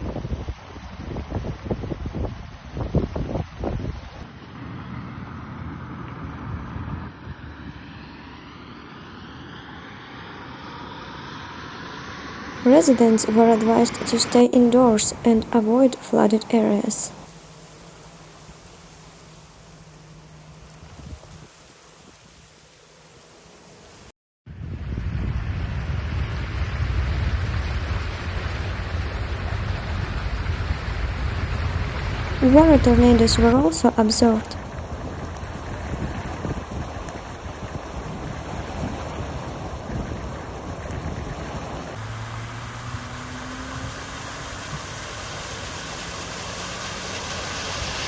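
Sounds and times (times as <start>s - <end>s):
low engine hum: 35.4s - 48.0s.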